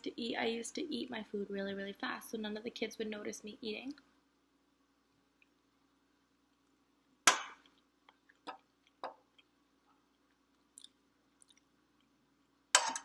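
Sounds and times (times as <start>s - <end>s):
faint steady hum: 0.0s - 13.0s
mouth clicks and chewing: 7.6s - 12.2s.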